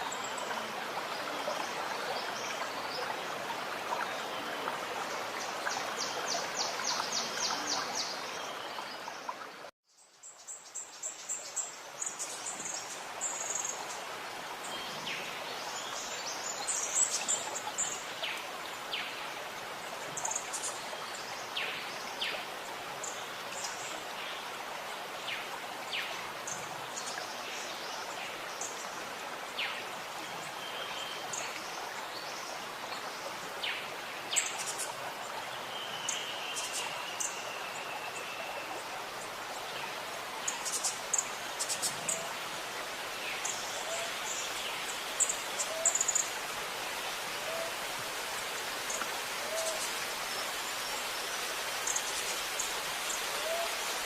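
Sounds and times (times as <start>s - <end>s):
birds chirping: 43.2s - 46.4s.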